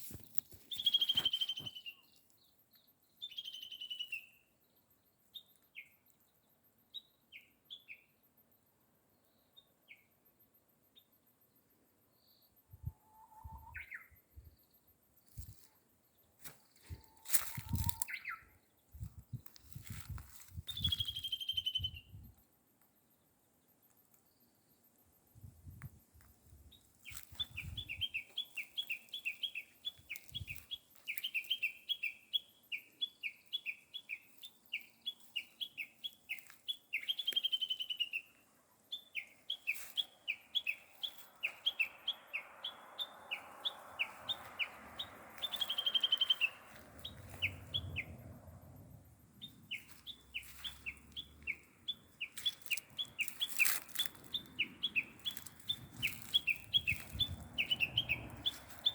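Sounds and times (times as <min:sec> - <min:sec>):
small bird chirping rapidly: 0:00.7 - 0:02.2, 0:03.2 - 0:04.4, 0:16.9 - 0:22.2, 0:27.0 - 0:58.9.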